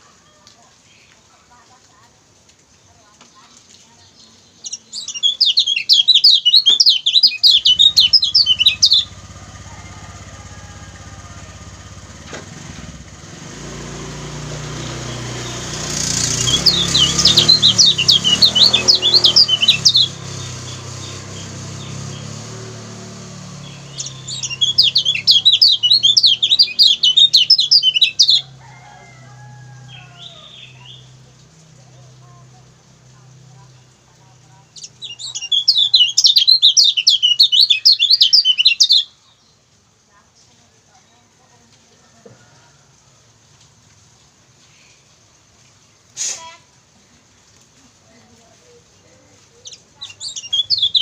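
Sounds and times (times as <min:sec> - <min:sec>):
bird chattering calls: 0:04.6 - 0:12.1, 0:15.5 - 0:22.3, 0:23.6 - 0:28.5, 0:34.6 - 0:39.1, 0:49.6 - 0:51.0.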